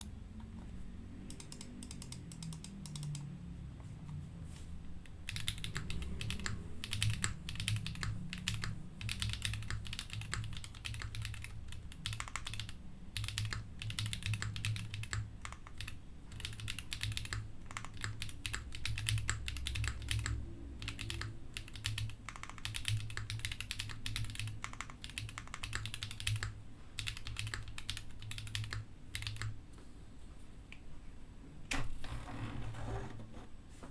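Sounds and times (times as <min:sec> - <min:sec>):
mechanical keyboard typing: 0:01.2 - 0:03.4, 0:05.0 - 0:29.6.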